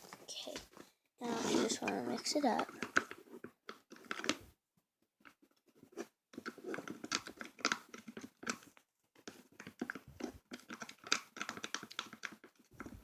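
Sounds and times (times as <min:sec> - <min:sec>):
wet stirring and scraping in bowl: 0:01.2 - 0:03.2.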